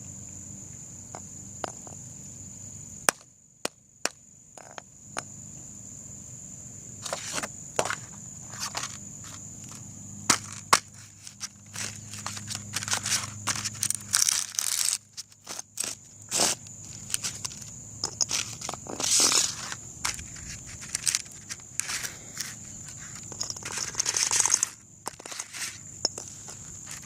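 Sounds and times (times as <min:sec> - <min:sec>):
crackling and crinkling: 0:07.0 - 0:27.0.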